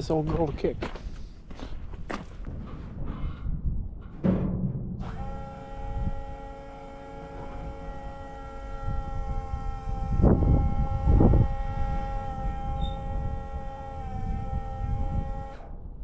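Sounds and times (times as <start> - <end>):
engine whine: 4.2 - 16.0
diesel truck engine running: 5.0 - 15.5
engine revving: 5.0 - 15.7.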